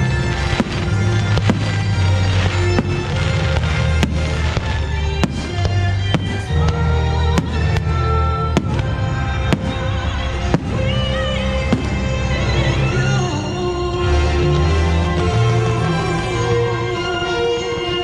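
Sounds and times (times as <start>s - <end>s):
fireworks bangs: 0.0s - 13.2s
show music with heavy bass: 0.0s - 18.0s.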